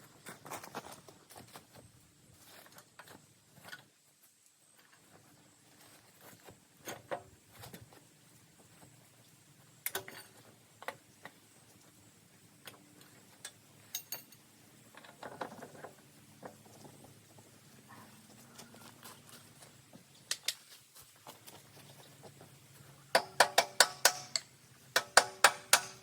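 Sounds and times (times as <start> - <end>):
metal parts and tools clinking: 9.9 - 10.5, 13.0 - 15.8.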